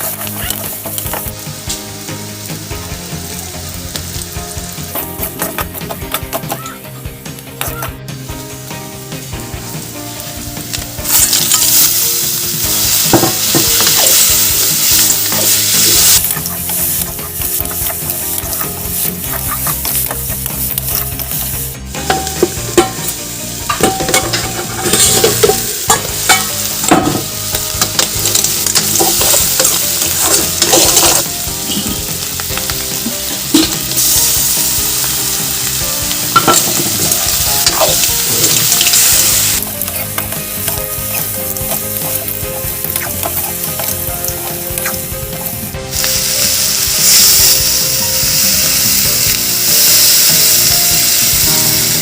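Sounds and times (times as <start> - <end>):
food sizzling in hot oil: 0.0 - 52.0
spatula scraping a pan: 23.8 - 27.3, 27.9 - 32.0.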